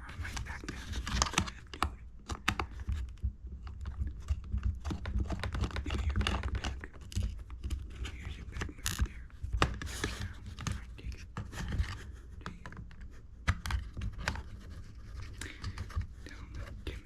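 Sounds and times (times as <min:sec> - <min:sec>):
light clicks and taps: 0:00.1 - 0:17.0.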